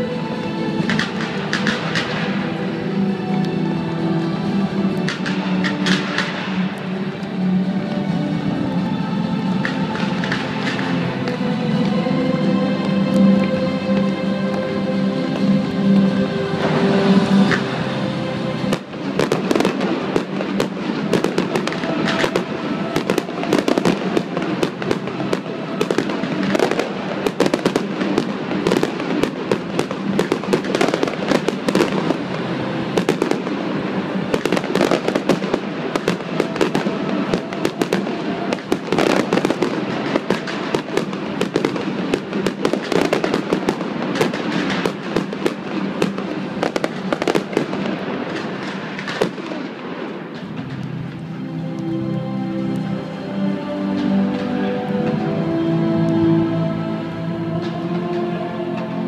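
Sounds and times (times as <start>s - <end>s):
fireworks bangs and crackling: 0.7s - 3.6s, 4.2s - 7.1s, 9.5s - 11.8s, 18.6s - 51.2s.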